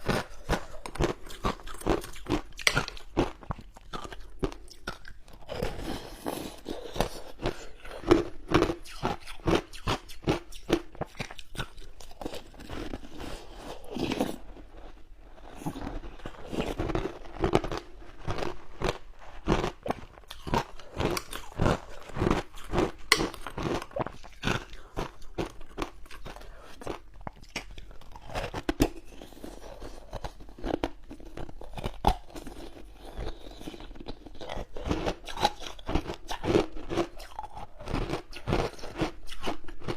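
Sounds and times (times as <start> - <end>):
crunching frozen ice: 11.2 - 39.9.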